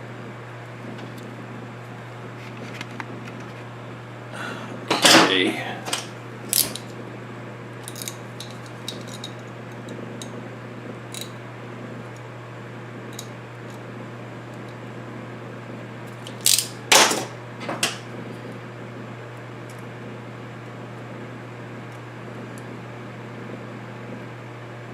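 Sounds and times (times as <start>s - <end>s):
metal tools clicking and scraping: 5.9s - 6.9s, 7.8s - 9.4s, 16.2s - 17.2s.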